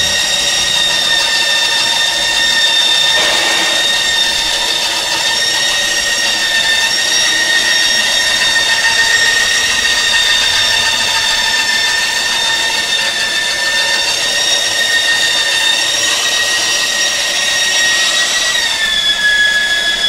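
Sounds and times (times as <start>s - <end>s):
welding machine motor whining: 0.0s - 11.9s.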